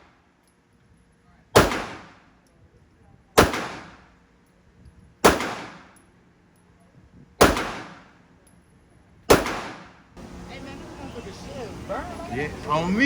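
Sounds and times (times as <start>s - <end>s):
gunshots echoing: 1.6s - 2.2s, 3.4s - 4.0s, 5.2s - 5.9s, 7.4s - 8.1s, 9.3s - 10.0s.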